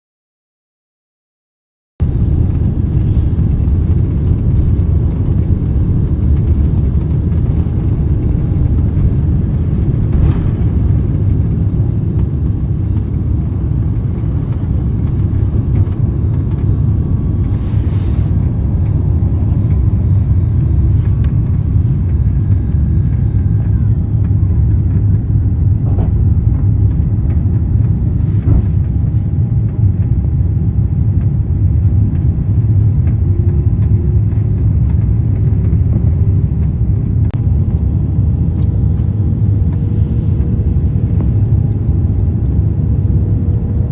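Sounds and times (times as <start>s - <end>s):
airplane cabin rumble: 2.0s - 43.9s.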